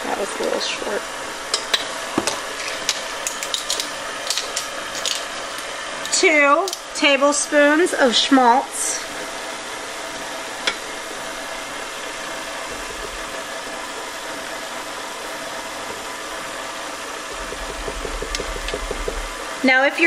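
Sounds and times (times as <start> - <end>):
stand mixer motor whirring: 0.0 - 19.7
regular ticks: 17.4 - 19.4.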